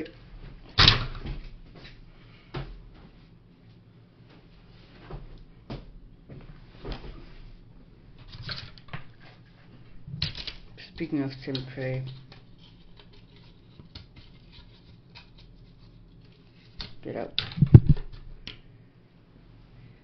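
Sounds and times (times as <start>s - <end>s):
cardboard and paper rustling: 12.2s - 16.8s.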